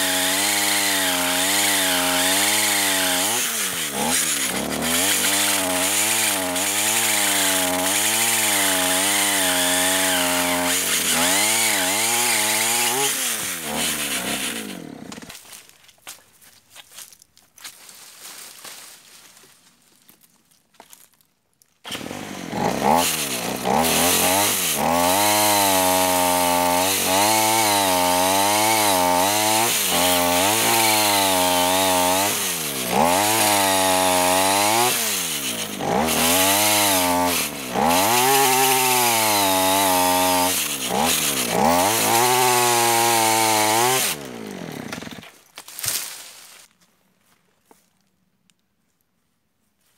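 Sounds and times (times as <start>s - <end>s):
brushcutter engine revving: 0.0s - 15.4s, 21.8s - 45.3s.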